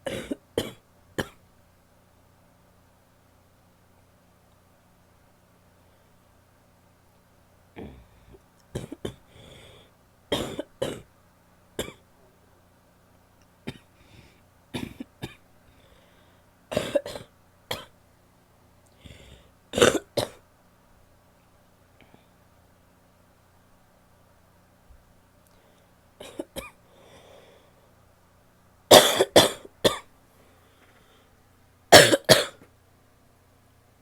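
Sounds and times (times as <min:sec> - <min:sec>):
woman coughing wetly: 0:00.0 - 0:01.4, 0:08.8 - 0:09.2, 0:10.3 - 0:11.1, 0:14.7 - 0:15.4, 0:16.7 - 0:17.9, 0:19.8 - 0:20.4, 0:26.2 - 0:26.8, 0:28.9 - 0:30.1, 0:31.9 - 0:32.6.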